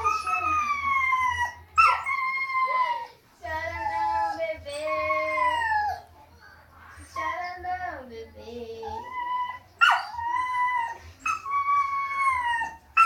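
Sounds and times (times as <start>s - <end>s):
dog howling: 0.0s - 3.1s, 8.9s - 13.0s.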